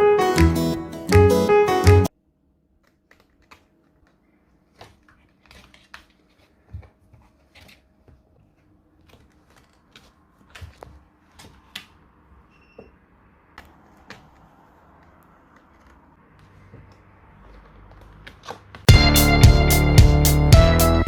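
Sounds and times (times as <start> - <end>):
piano music: 0.0 - 2.1, 18.9 - 21.0.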